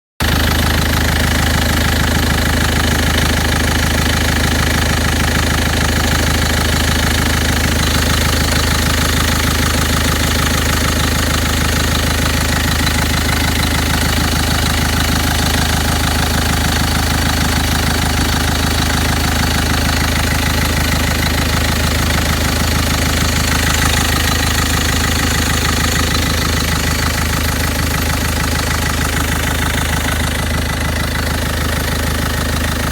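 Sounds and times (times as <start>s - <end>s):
diesel engine idling: 0.2s - 32.9s.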